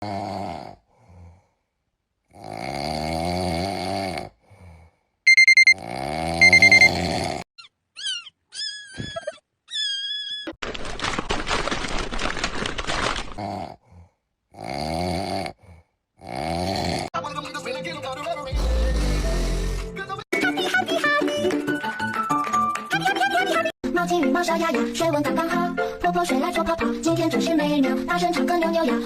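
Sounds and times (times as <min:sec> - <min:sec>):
loud quick electronic beeps: 0:05.3 - 0:05.8, 0:06.4 - 0:06.9.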